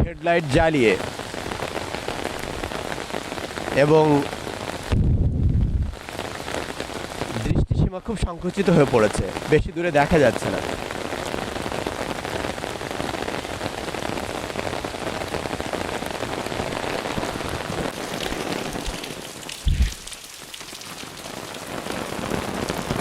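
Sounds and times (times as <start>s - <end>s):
heavy rain pouring: 0.0s - 23.0s
low thump: 19.6s - 20.0s.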